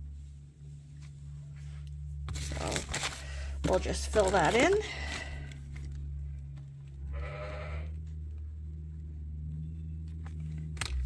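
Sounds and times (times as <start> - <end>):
steady low hum: 0.0 - 11.0
sheep bleating: 7.1 - 8.0.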